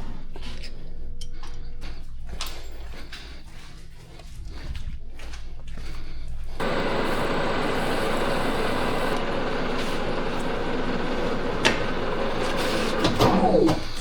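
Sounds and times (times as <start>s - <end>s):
metal lathe running: 6.6s - 14.0s.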